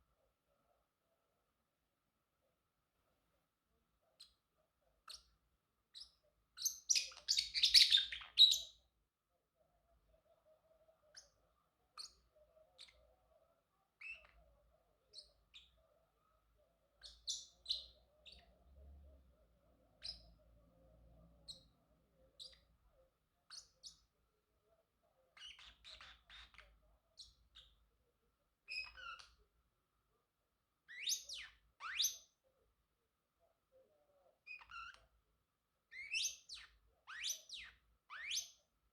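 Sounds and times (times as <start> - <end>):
parrotlet chirping: 4.2 - 4.4, 5.0 - 8.9, 11.1 - 13.2, 14.0 - 14.5, 15.1 - 15.8, 17.0 - 18.5, 19.9 - 20.4, 21.4 - 22.8, 23.4 - 24.1, 25.3 - 27.8, 28.6 - 29.4, 30.8 - 32.4, 34.4 - 35.1, 35.9 - 38.6.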